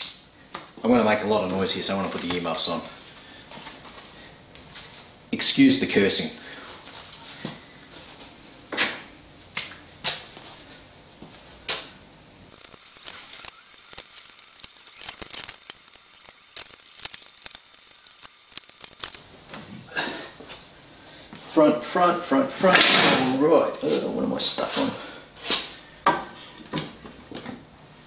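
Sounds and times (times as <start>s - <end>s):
small clicks: 12.5s - 19.2s.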